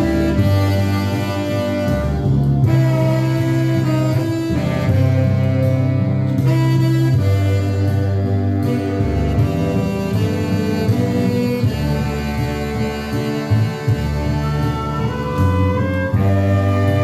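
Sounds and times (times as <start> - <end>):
instrumental music with held notes: 0.0 - 17.0
low bass line: 0.0 - 17.0.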